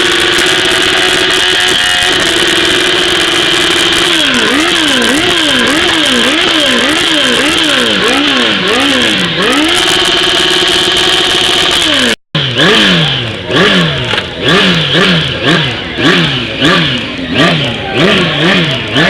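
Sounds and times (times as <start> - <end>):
engine revving: 0.0 - 19.0.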